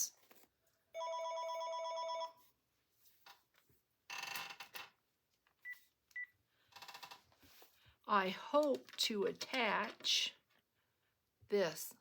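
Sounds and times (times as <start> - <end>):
phone ringing warble: 1.0 - 2.4.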